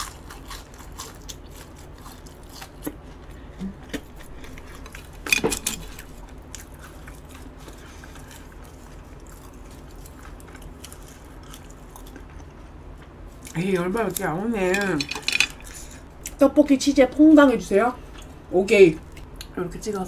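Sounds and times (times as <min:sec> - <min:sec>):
chewing with mouth clicks: 0:00.0 - 0:14.3.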